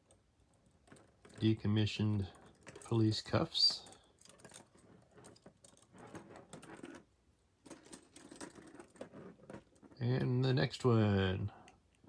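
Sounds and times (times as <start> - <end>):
handcuffs clicking and rattling: 0.0 - 7.0, 7.6 - 9.8.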